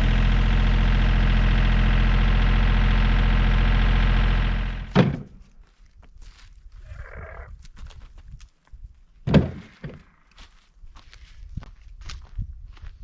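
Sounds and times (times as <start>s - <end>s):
tractor engine running: 0.0s - 5.4s
loud thunk: 4.9s - 5.3s, 9.3s - 10.1s
footsteps: 5.1s - 6.6s, 7.6s - 13.0s.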